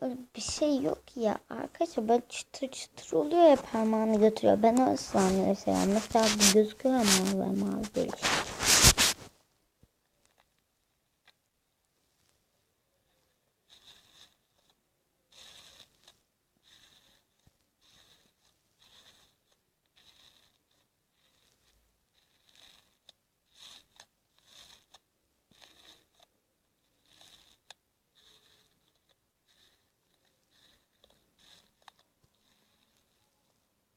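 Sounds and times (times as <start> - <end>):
slime crackling and squishing: 3.1 - 9.2.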